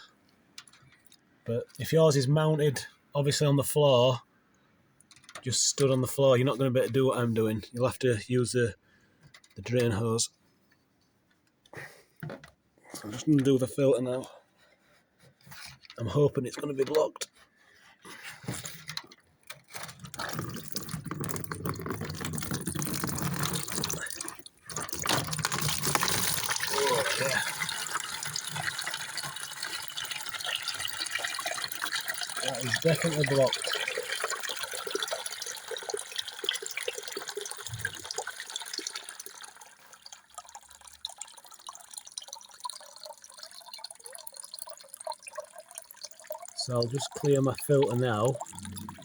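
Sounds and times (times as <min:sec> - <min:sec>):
water rushing into a bucket: 0:05.4 - 0:08.6, 0:19.8 - 0:49.0.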